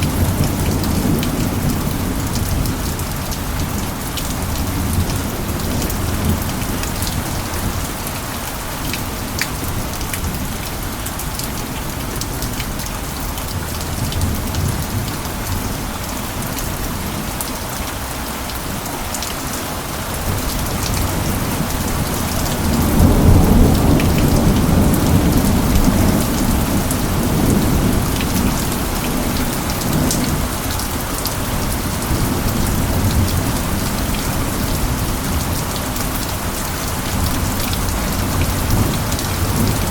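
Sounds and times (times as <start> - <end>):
heavy rain: 0.0 - 39.9
low roll of thunder: 20.2 - 30.5.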